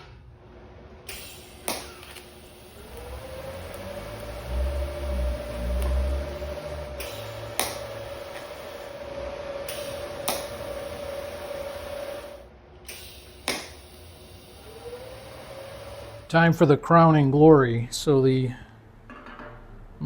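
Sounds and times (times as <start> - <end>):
power tool motor whine: 1.1 - 16.3
sharp clicks: 12.9 - 13.9.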